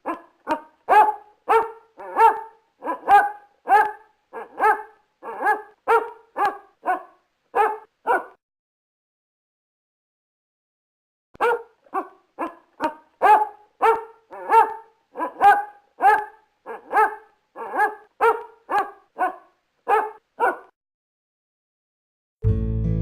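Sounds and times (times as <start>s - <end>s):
dog barking: 0.0s - 8.4s, 11.4s - 20.8s.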